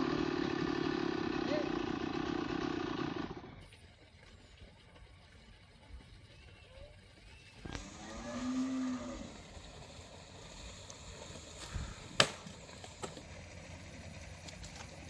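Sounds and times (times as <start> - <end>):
cow lowing: 7.7 - 12.8.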